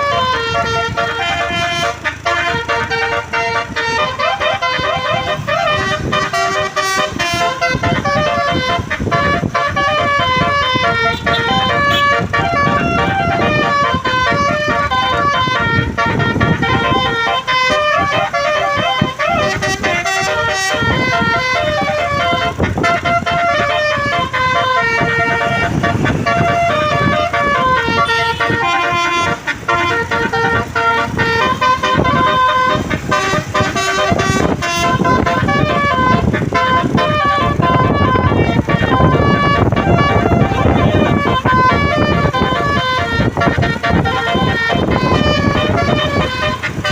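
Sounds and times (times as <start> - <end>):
bus horn playing a melody: 0.0 - 46.9.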